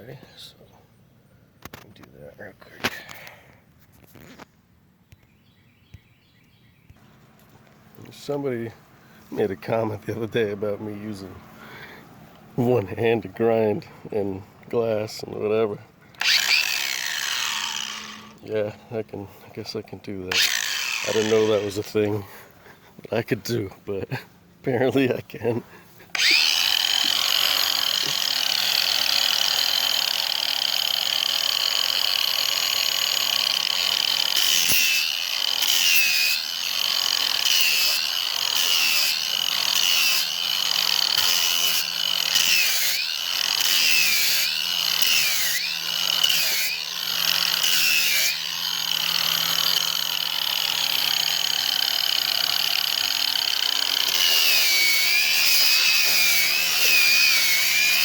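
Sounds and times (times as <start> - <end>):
handheld grinder whining: 16.1 - 18.8, 20.3 - 22.4, 25.9 - 58.0.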